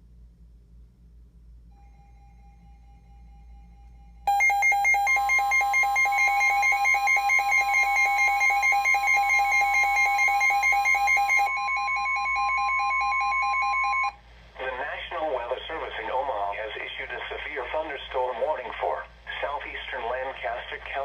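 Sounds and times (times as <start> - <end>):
steady warning tone: 1.7 - 14.2
harsh pulsing electronic alarm: 4.3 - 14.1.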